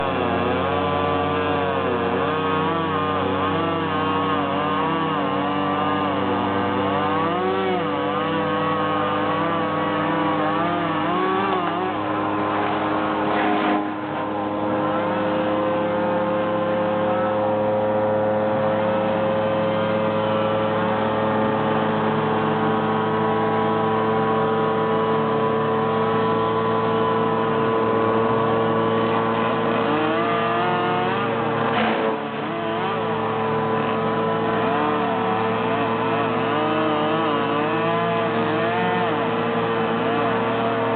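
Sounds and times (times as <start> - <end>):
chainsaw engine running: 0.0 - 40.9.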